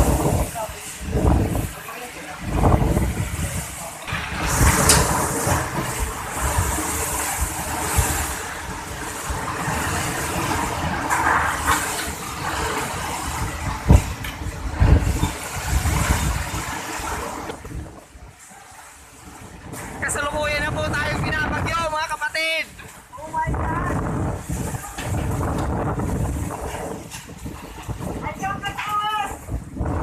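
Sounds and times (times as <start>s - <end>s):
heavy rain: 0.0s - 30.0s
strong wind: 0.0s - 30.0s
deep rumbling: 2.4s - 18.1s, 23.1s - 28.7s.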